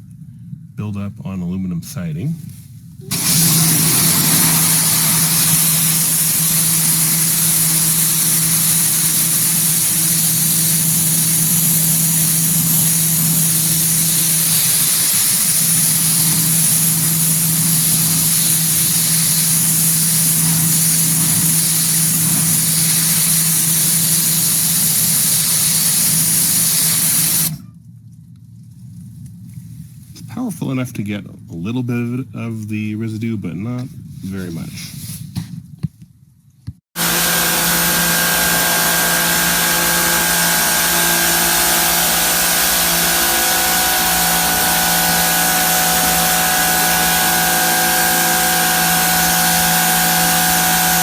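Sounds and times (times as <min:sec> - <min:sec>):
motor and pump hum: 0:03.0 - 0:27.6, 0:37.0 - 0:51.0
pressure washer water jet hissing: 0:03.0 - 0:27.6, 0:37.0 - 0:51.0.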